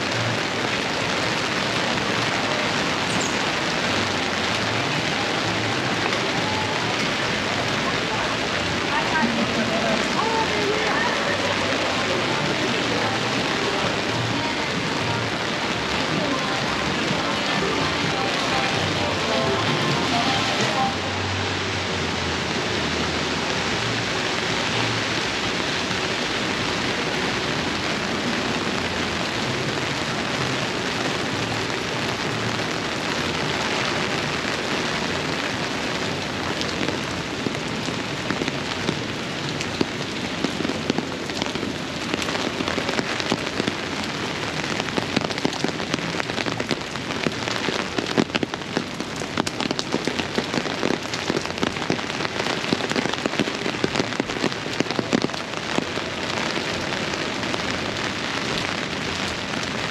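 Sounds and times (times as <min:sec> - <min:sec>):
heavy rain falling: 0:00.0 - 0:59.9
sharp raindrop hits: 0:23.9 - 0:59.9.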